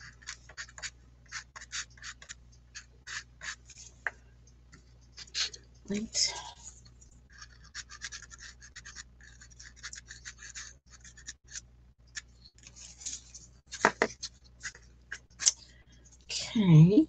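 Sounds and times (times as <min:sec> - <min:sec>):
pastel stick scratching paper: 0:00.0 - 0:03.7, 0:07.3 - 0:11.6.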